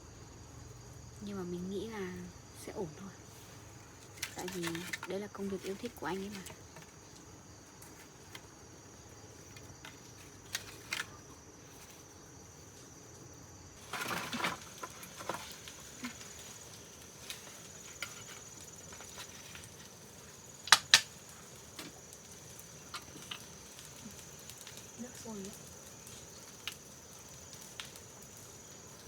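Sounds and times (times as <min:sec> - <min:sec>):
high insect trill: 0:00.0 - 0:29.0
rustling clatter: 0:04.0 - 0:07.2, 0:13.8 - 0:20.2.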